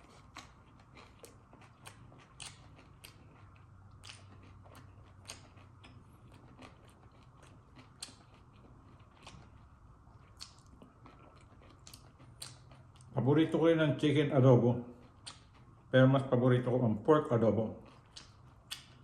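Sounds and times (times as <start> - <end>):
person chewing food: 0.0 - 13.2, 14.9 - 15.9, 17.6 - 19.0.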